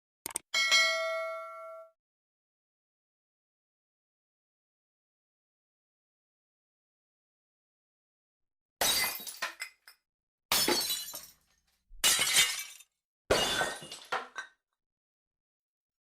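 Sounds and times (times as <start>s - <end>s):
glass pieces falling: 8.8s - 11.4s, 12.0s - 14.5s
glass shattering: 8.8s - 14.5s.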